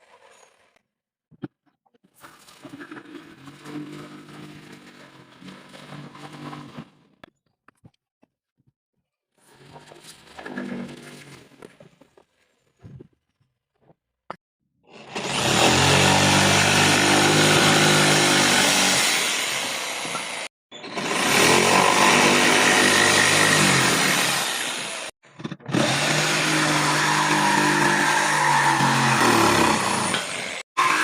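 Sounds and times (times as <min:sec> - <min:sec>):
woodworking power tool cutting: 0:14.9 - 0:31.0.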